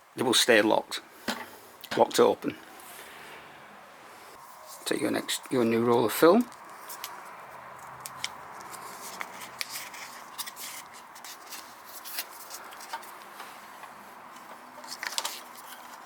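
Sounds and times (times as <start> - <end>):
small clicks and rustles of film: 6.4 - 16.0.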